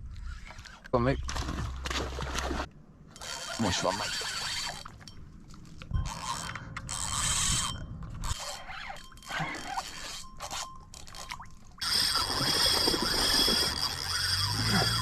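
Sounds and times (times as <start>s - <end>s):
fishing reel drag screeching: 3.2s - 4.9s, 6.1s - 15.0s.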